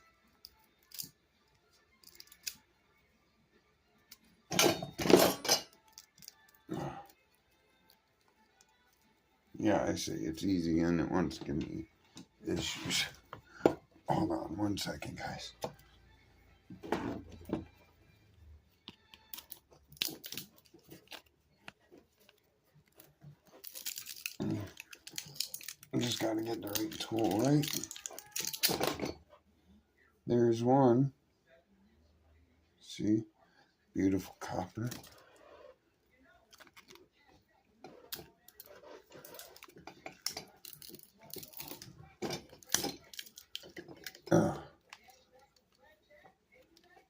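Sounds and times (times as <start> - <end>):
hand snips clicking and scraping: 2.0 - 2.6
metal parts and tools handled: 2.0 - 2.6, 4.5 - 6.5, 22.2 - 29.2, 37.8 - 44.3.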